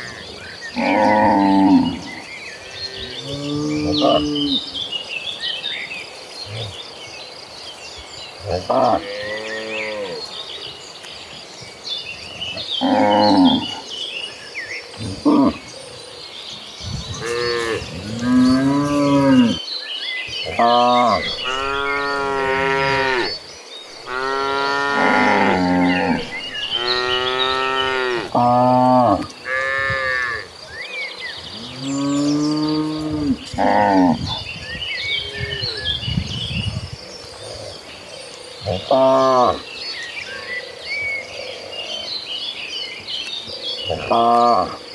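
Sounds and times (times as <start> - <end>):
cows mooing: 0.8 - 2.2, 12.8 - 13.8, 17.2 - 19.6, 20.5 - 30.5.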